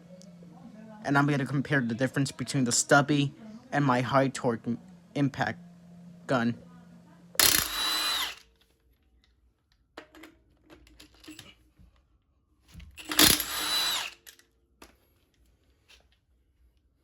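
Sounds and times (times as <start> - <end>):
impact wrench whining and rattling: 7.4 - 8.5, 12.8 - 14.4.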